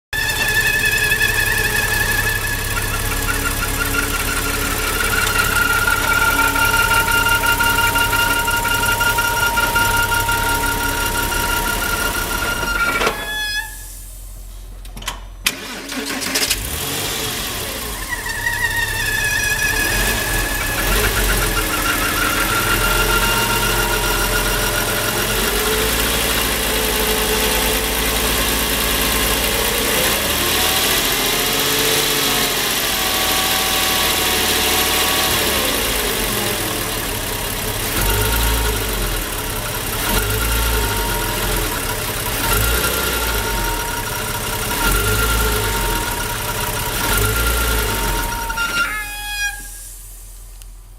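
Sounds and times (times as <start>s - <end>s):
car engine starting and idling: 0.0s - 50.9s
moaning whistle: 0.2s - 14.1s, 18.1s - 28.6s, 40.1s - 50.0s.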